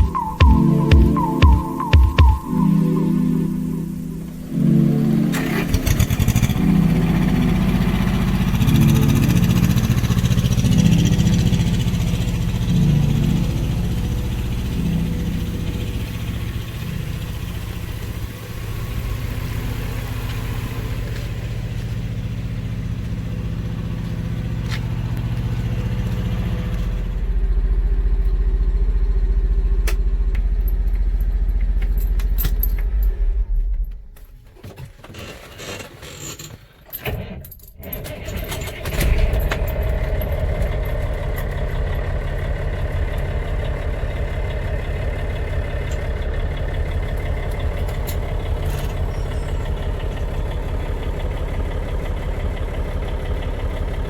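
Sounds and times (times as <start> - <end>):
diesel engine idling: 2.4 - 33.9, 38.2 - 54.0
diesel engine running: 2.4 - 34.3, 37.9 - 54.0
rattles and jingling: 30.4 - 33.9.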